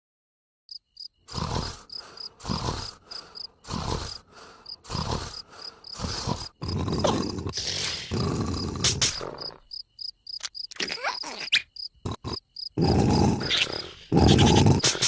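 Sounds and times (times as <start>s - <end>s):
cartoon character snoring: 1.3s - 9.7s, 12.0s - 15.0s
high chirping ticks: 8.8s - 12.7s.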